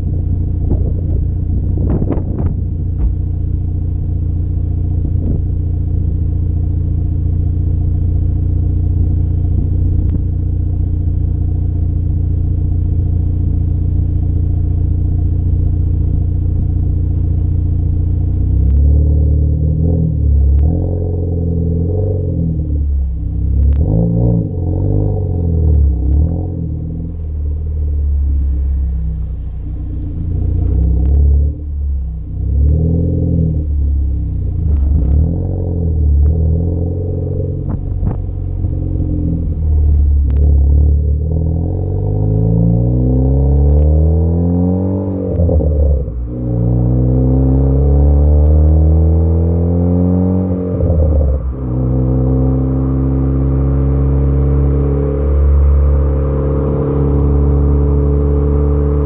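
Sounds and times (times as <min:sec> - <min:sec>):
exhaust pops and crackles: 0:00.0 - 0:04.1, 0:04.7 - 0:06.2, 0:09.0 - 0:10.8, 0:14.8 - 0:19.0, 0:23.4 - 0:24.1, 0:28.3 - 0:31.6, 0:34.4 - 0:36.6, 0:37.2 - 0:41.3
car engine idling: 0:00.0 - 0:44.0, 0:45.1 - 0:49.5, 0:50.3 - 0:59.0
car engine revving: 0:00.0 - 0:59.0.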